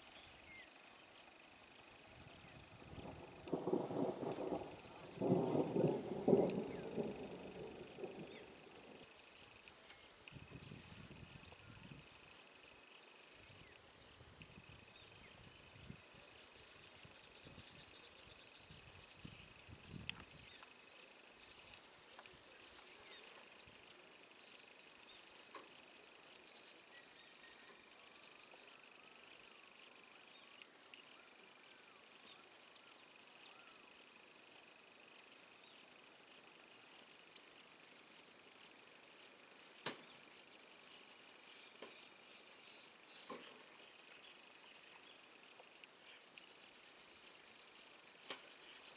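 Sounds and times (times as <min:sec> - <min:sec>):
crickets chirping: 0:00.0 - 0:48.9
faint insect drone: 0:00.0 - 0:48.9
faint low rumbles: 0:02.0 - 0:12.1.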